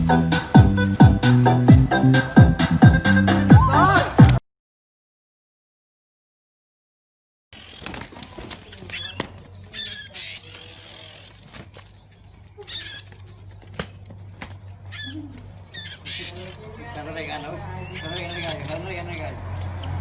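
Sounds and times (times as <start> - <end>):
bird squawks and chirps: 7.6 - 11.4, 12.5 - 13.2, 14.9 - 16.7, 17.3 - 20.0.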